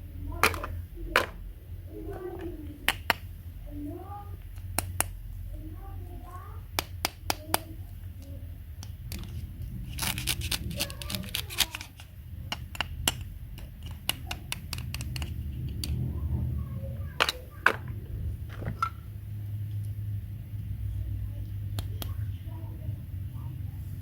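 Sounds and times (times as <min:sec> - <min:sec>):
low steady hum: 0:00.0 - 0:24.0
sharp clicks and taps: 0:02.1 - 0:03.3, 0:04.4 - 0:05.4, 0:06.7 - 0:16.0, 0:21.7 - 0:22.3.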